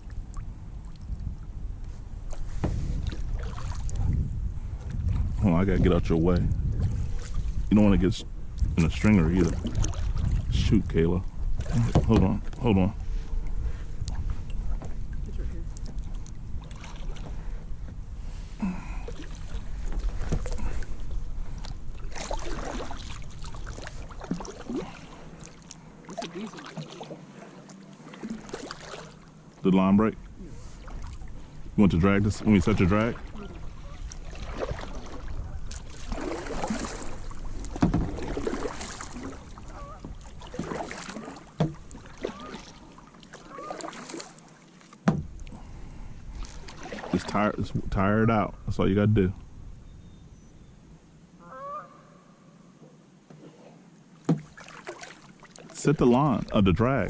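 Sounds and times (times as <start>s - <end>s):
wind rumbling on microphone: 0.0s - 25.4s, 29.9s - 40.9s, 45.2s - 51.9s
water splashing: 2.3s - 4.2s, 8.6s - 17.6s, 18.4s - 47.8s, 54.1s - 57.0s
knocks against plastic kayak: 37.8s - 38.2s, 45.0s - 45.4s, 54.2s - 54.5s.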